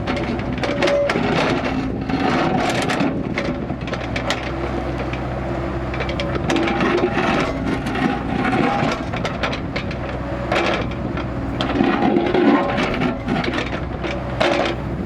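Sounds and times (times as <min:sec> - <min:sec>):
excavator diesel engine running: 0:00.0 - 0:15.0
bucket scraping soil and stones: 0:11.6 - 0:15.0.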